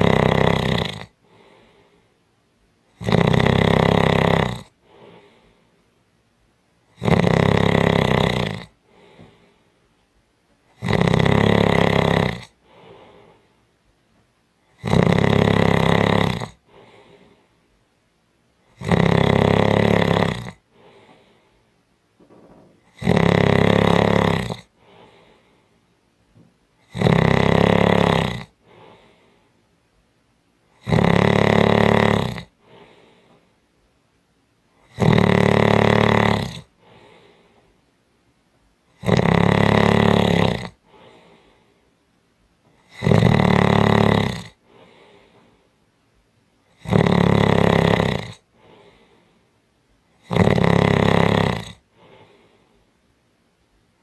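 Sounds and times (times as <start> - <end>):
person snoring loudly: 0.0 - 1.5, 2.9 - 5.4, 6.9 - 9.2, 10.7 - 13.2, 14.7 - 17.2, 18.7 - 21.2, 22.8 - 25.2, 26.8 - 29.1, 30.8 - 33.1, 34.8 - 37.3, 39.0 - 41.2, 42.8 - 45.0, 46.7 - 49.0, 50.2 - 52.4
faint breath: 1.2 - 2.3, 4.7 - 6.0, 8.8 - 10.0, 12.6 - 13.9, 16.6 - 17.8, 20.6 - 23.0, 24.6 - 26.6, 28.6 - 29.8, 32.6 - 33.7, 36.7 - 37.9, 40.8 - 42.0, 44.6 - 45.9, 48.4 - 50.2, 51.8 - 53.1.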